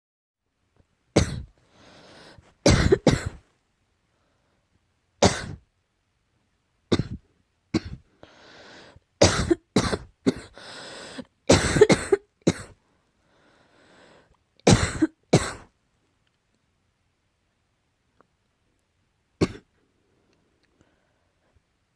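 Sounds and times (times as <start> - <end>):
person coughing: 1.2 - 1.5, 2.6 - 3.4, 5.2 - 5.6, 6.9 - 7.2, 7.8 - 8.0, 9.2 - 10.6, 11.5 - 12.8, 14.7 - 15.7, 19.4 - 19.7.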